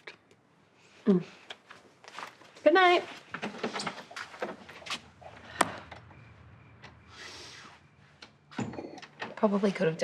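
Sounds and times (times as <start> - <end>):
footsteps: 1.6 - 6.0.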